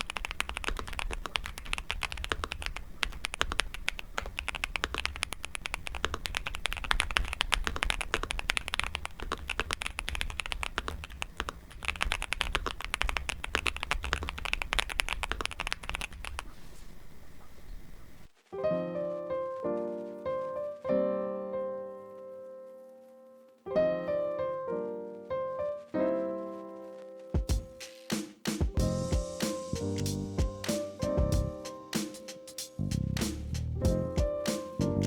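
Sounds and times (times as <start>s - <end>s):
mechanical keyboard typing: 0.0s - 16.5s.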